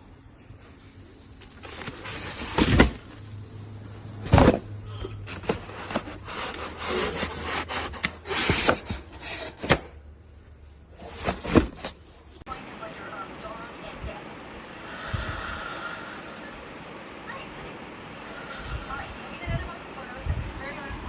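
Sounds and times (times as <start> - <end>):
rubbing and scraping: 4.2 - 9.8.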